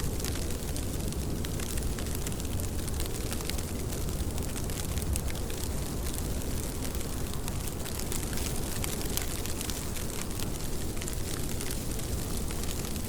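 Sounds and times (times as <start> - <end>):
rain drop ticks: 0.0 - 13.0
steady rain: 0.0 - 13.0.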